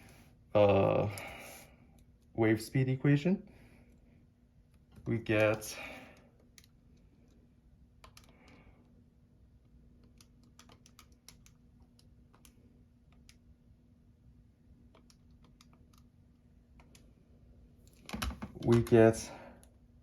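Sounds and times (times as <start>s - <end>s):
faint steady hum: 0.0s - 20.0s
keys being pressed: 10.0s - 12.5s, 17.9s - 19.1s.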